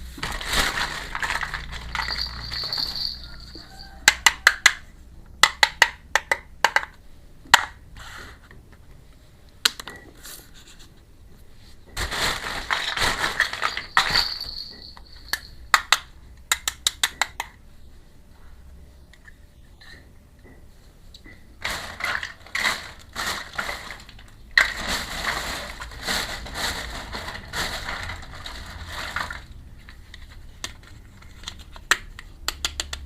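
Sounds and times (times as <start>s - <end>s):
packaging crinkling: 0.2s - 3.4s, 12.0s - 14.7s, 21.6s - 29.7s
plastic toy pieces clicking: 31.4s - 33.0s.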